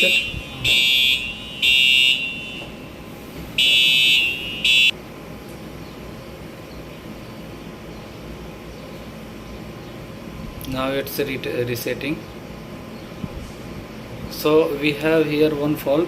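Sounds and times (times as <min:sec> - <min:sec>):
fire alarm buzzer: 0:00.0 - 0:05.0
steady low hum: 0:00.0 - 0:16.0.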